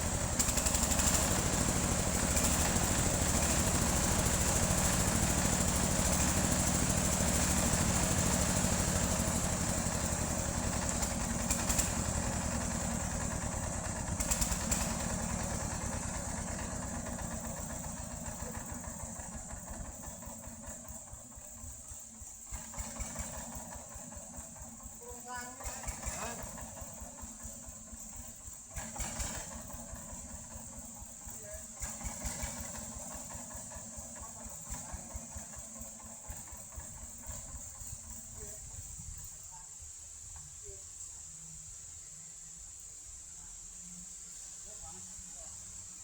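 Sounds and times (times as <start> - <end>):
sawmill engine drone: 0.0 - 21.1.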